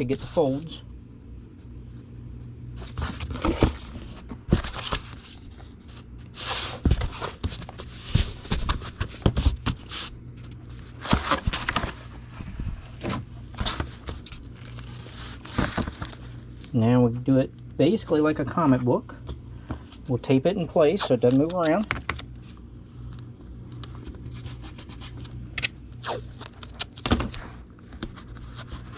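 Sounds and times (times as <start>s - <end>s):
steady low hum: 0.0s - 28.9s
cardboard knocking and scraping: 2.9s - 5.2s, 6.4s - 10.1s, 11.0s - 14.3s, 15.4s - 16.2s.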